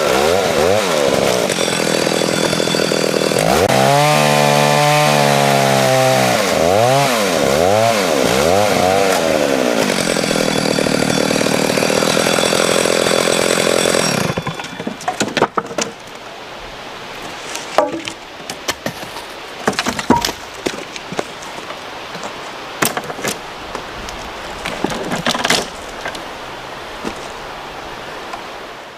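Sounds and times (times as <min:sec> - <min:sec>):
chainsaw cutting logs: 0:00.0 - 0:16.1, 0:22.8 - 0:27.4.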